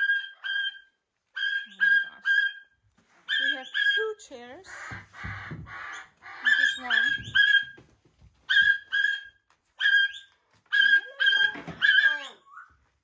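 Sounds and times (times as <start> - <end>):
pet's short sharp high calls: 0.0 - 4.1.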